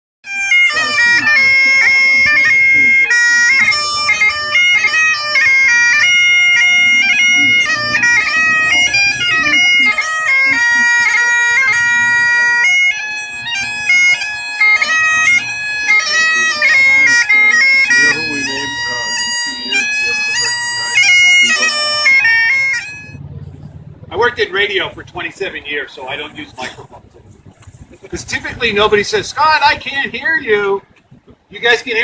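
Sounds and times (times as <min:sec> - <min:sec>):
bagpipes playing a tune: 0:00.3 - 0:23.2.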